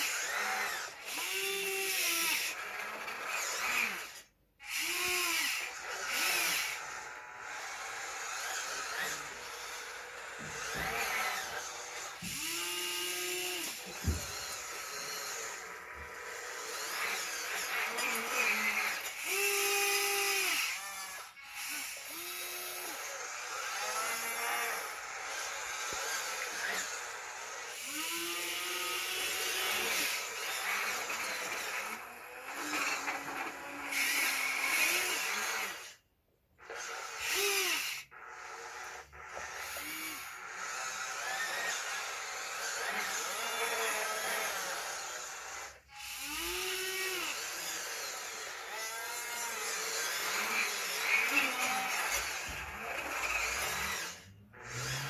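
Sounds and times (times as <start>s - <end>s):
small electric motors whining: 0.0s - 55.0s.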